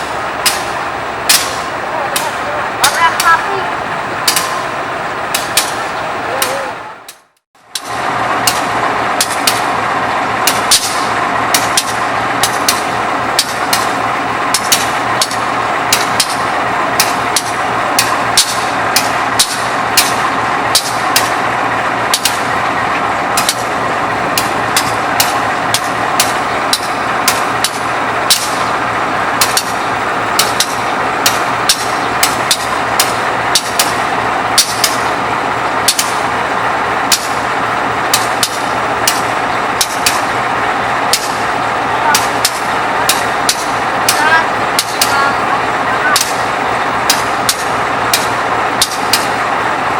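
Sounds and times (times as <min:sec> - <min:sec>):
diesel locomotive engine idling: 0:00.0 - 0:49.9
sharp clicks: 0:29.4 - 0:34.0, 0:34.6 - 0:35.2, 0:35.9 - 0:36.2, 0:38.1 - 0:40.3.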